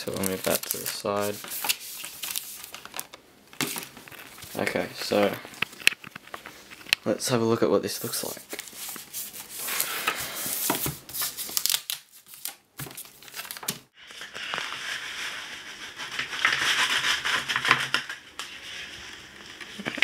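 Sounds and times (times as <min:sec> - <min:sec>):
plastic wrapping crinkling: 0:00.0 - 0:07.0, 0:10.6 - 0:14.8.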